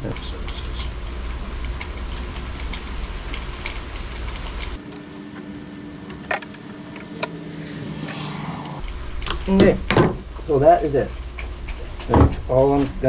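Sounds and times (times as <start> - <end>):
steady mechanical hum: 0.0 - 13.0.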